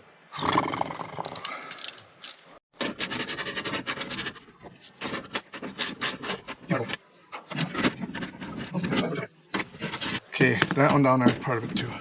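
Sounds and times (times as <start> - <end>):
metal rattling and scraping: 2.3 - 12.0.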